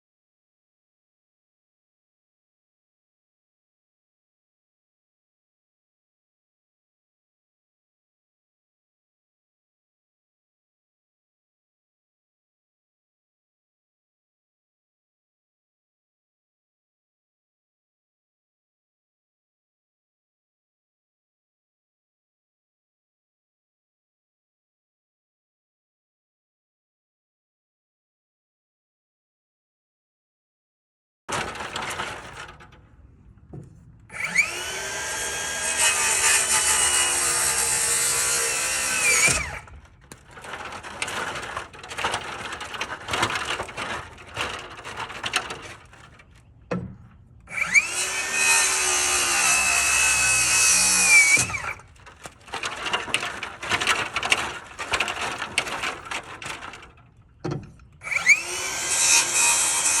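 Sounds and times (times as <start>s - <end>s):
knocks and clatter of wood: 31.3s - 34.8s, 35.7s - 48.0s, 50.2s - 59.6s
power saw cutting wood: 34.1s - 45.8s, 47.5s - 56.8s, 58.0s - 60.0s.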